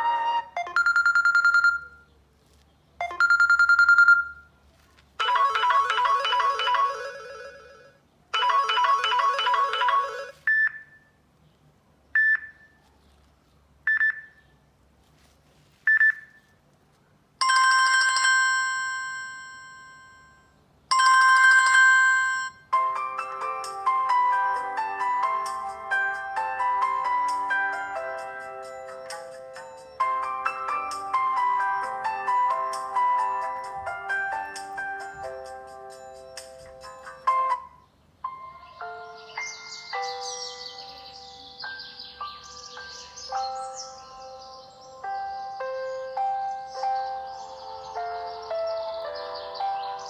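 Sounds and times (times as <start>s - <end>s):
ringing chime: 17.4s - 22.7s.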